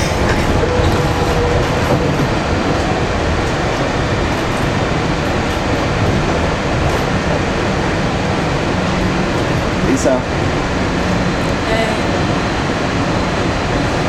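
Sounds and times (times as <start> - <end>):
monorail motors and wheels rumbling: 0.0 - 14.0.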